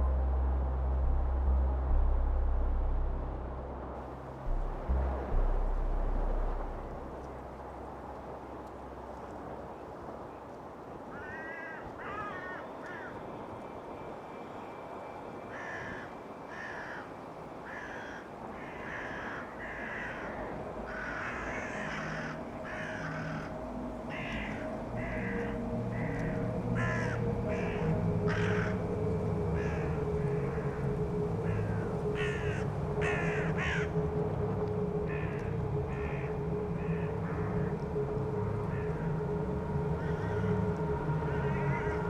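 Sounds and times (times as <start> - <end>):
low steady drone: 0.0 - 10.9, 12.0 - 42.0
crows cawing: 11.1 - 13.2, 15.5 - 34.0, 34.9 - 39.4, 40.0 - 42.0.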